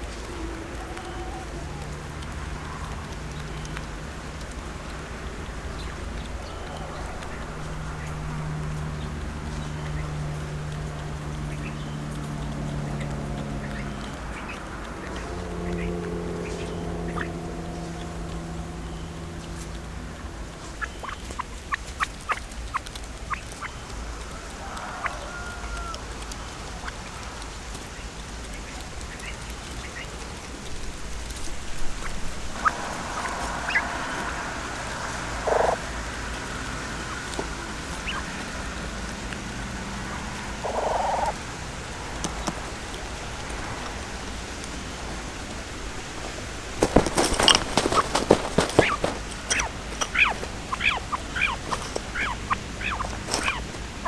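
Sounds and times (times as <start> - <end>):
bird calls: 0.0 - 54.0
faint clicks and rustles: 17.8 - 54.0.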